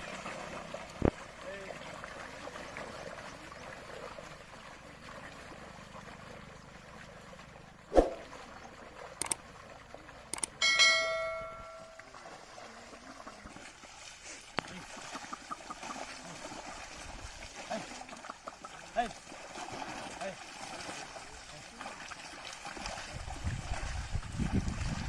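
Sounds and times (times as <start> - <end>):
metal bell ringing: 10.6 - 12.0.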